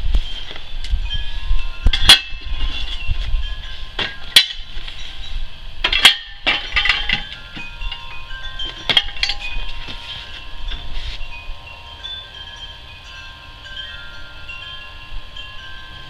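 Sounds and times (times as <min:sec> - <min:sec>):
metallic clinks and knocks: 0:00.2 - 0:12.6.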